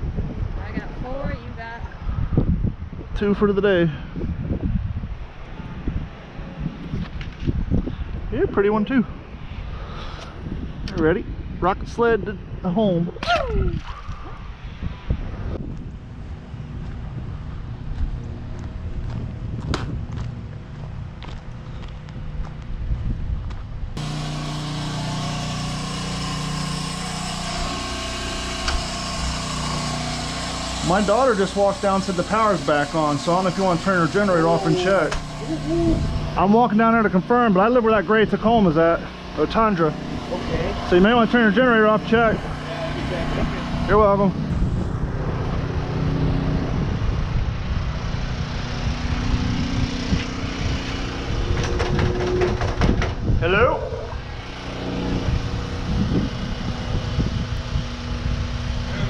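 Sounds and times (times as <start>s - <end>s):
portable generator running: 24.0s - 59.0s.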